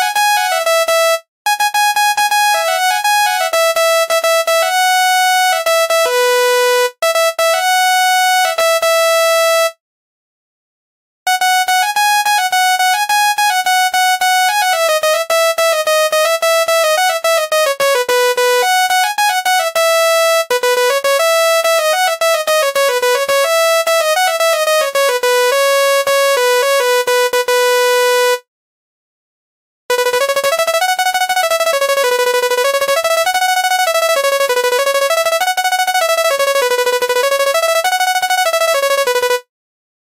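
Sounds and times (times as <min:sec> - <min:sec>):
multi-tone bus horn melody: 0:29.9 - 0:35.4, 0:36.0 - 0:39.5.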